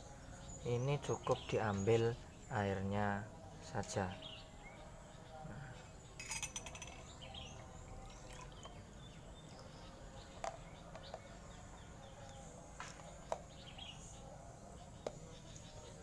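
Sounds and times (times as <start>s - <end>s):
kitchenware clinking: 6.2s - 7.1s.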